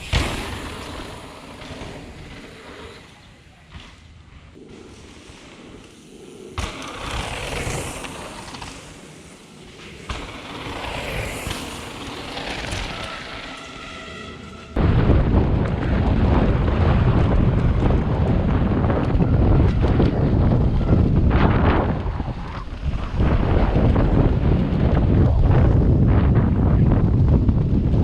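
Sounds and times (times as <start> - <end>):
mountain bike rattling on trail: 6.6 - 14.2
short high squeal: 12.6 - 14.8
wind buffeting on microphone: 14.7 - 28.0.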